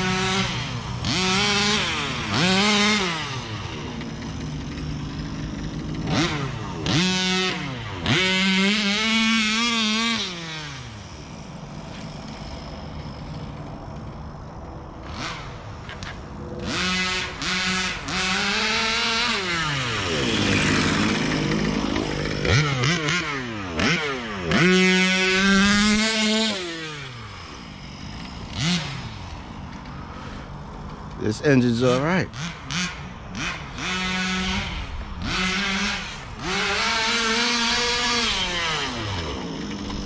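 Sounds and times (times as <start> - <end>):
rc car passing by: 0.0 - 40.0
small two-stroke engine revving: 0.0 - 40.0.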